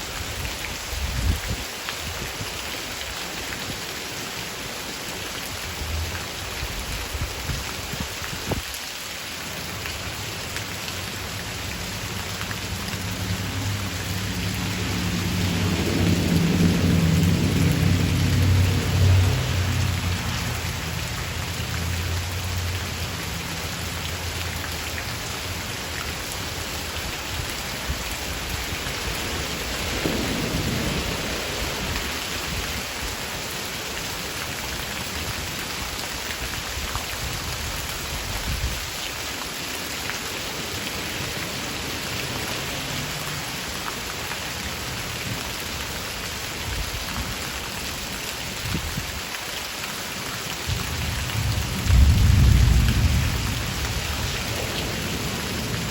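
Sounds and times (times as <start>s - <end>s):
steady rain: 0.0s - 55.9s
thunder rumbling: 12.7s - 21.6s, 28.4s - 33.0s, 50.7s - 55.9s.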